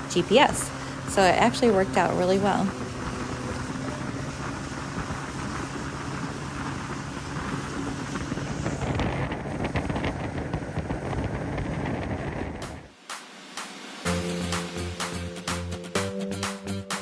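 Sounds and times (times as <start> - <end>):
outboard motor hum: 0.0 - 12.9, 14.1 - 17.0
wind buffeting microphone: 0.0 - 12.9.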